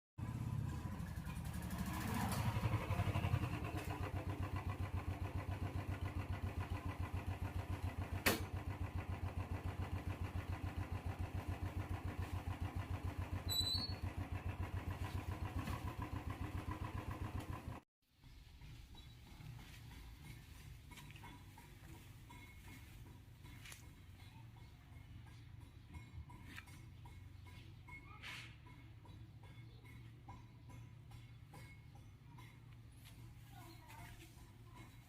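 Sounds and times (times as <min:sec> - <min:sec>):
motorcycle engine running: 0:00.2 - 0:17.8, 0:18.6 - 0:27.9.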